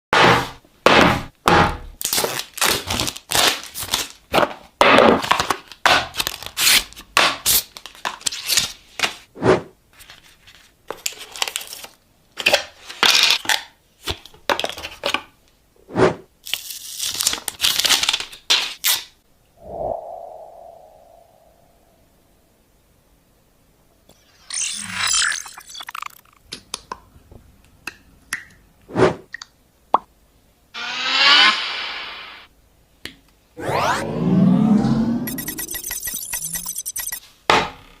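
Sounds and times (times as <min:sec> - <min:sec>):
plastic film tearing and crinkling: 0:02.0 - 0:04.2, 0:16.4 - 0:19.0
short ringing tone: 0:35.1 - 0:37.2.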